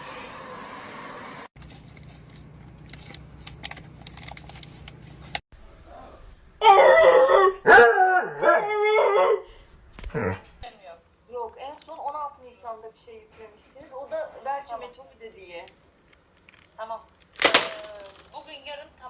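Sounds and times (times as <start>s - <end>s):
dog howling: 6.6s - 10.6s.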